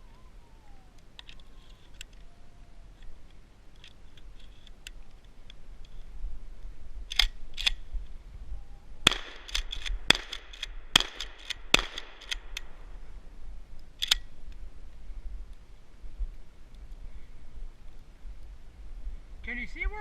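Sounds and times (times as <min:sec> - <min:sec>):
shotgun metallic clicks: 0:07.0 - 0:07.8, 0:09.1 - 0:12.8, 0:13.8 - 0:14.6.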